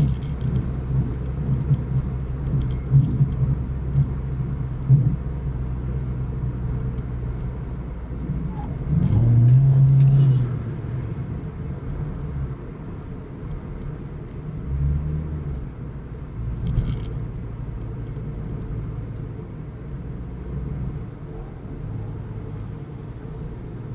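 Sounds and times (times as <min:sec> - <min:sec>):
light rattles: 0:00.0 - 0:10.7, 0:11.3 - 0:19.6
vehicle engine low rumble: 0:00.0 - 0:23.9.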